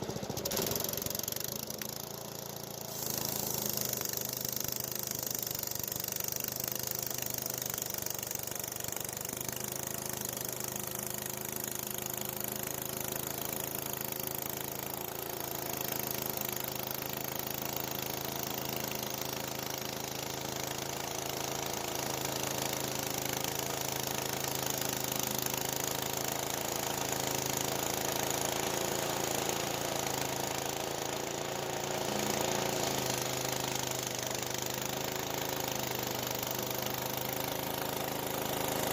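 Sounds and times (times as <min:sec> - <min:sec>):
small gasoline engine running: 0:00.0 - 0:38.9.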